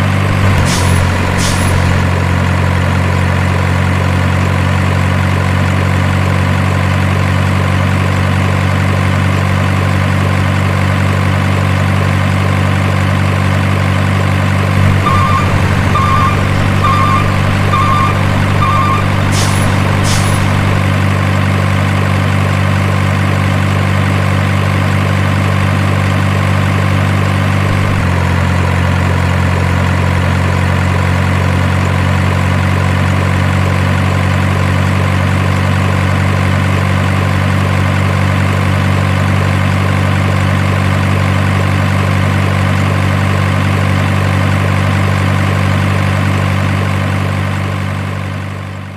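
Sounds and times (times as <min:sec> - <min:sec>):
heavy truck engine idling: 0:00.0 - 0:08.0, 0:09.8 - 0:28.8
short beeps: 0:14.8 - 0:20.9.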